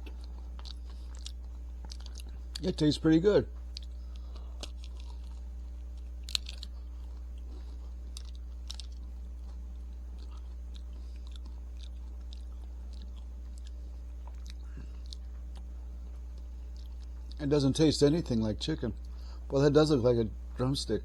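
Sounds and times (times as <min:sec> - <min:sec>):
crunching frozen ice cream bar: 0:00.0 - 0:19.9
steady low hum: 0:00.0 - 0:21.0.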